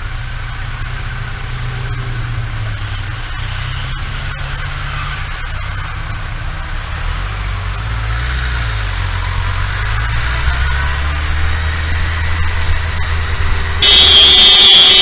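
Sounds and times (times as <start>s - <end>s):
motorcycle engine running: 0.0s - 15.0s
wind and road noise: 0.0s - 15.0s.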